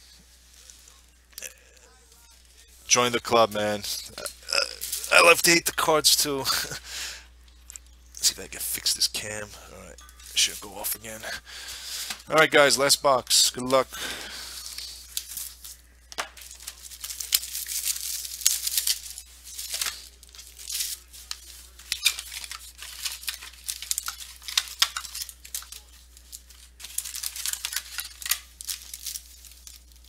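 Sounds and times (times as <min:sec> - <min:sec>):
plastic wrapping tearing and crinkling: 0:03.3 - 0:06.8, 0:13.6 - 0:30.0.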